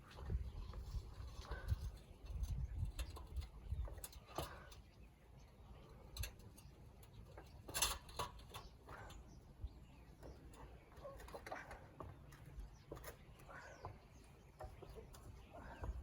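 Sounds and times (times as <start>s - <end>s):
faint bird calls: 8.5s - 16.0s.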